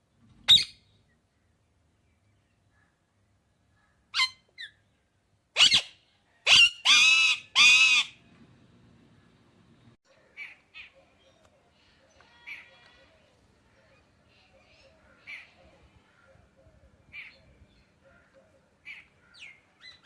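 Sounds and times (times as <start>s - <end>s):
parrot calling: 5.6s - 8.2s.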